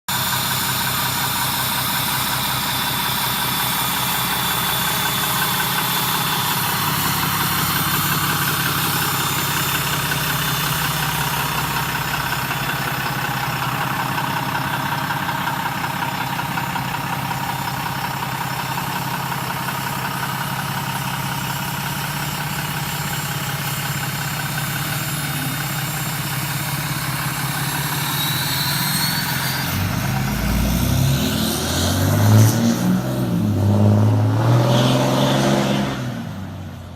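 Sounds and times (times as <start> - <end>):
diesel engine idling: 0.1 - 34.4
turbo whistle: 23.2 - 31.9.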